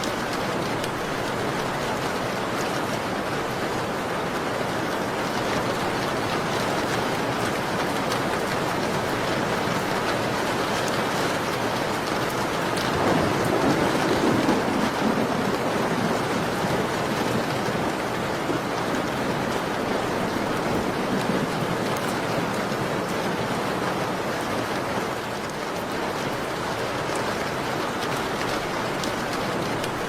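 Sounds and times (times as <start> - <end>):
steady rain falling: 0.0 - 30.0.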